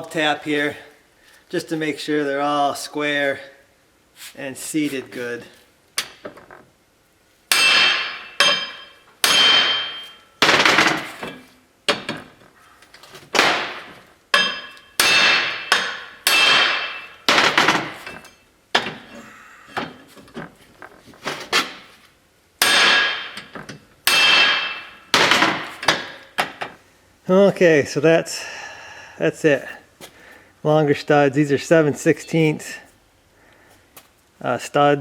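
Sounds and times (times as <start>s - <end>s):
hammer tapping metal: 7.5s - 11.0s, 13.4s - 19.1s, 22.6s - 26.3s.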